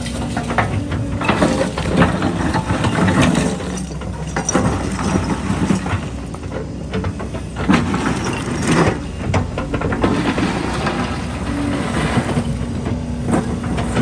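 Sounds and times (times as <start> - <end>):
concrete rubble clanking and scraping: 0.0 - 14.0
excavator diesel engine running: 0.0 - 14.0.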